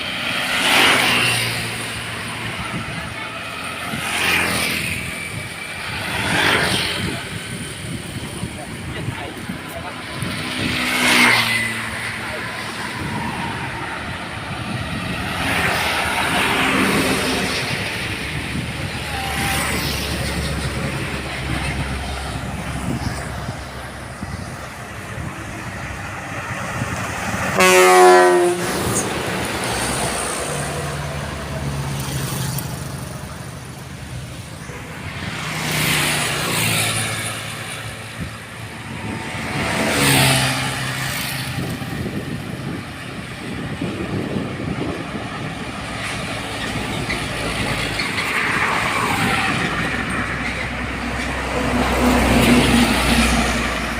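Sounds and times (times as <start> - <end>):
roadside traffic: 0.0 - 53.9
vehicles passing: 0.0 - 53.9
loud bus horn blast: 27.5 - 29.1.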